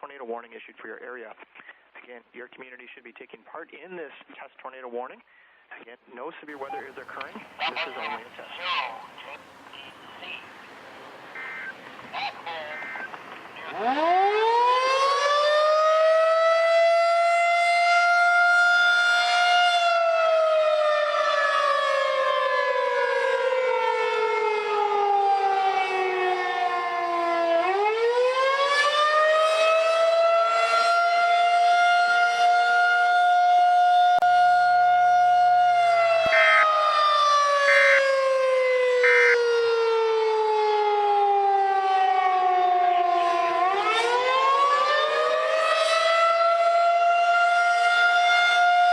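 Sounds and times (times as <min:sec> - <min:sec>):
warning siren wailing: 0:06.5 - 0:48.9
short beeps: 0:11.4 - 0:11.8.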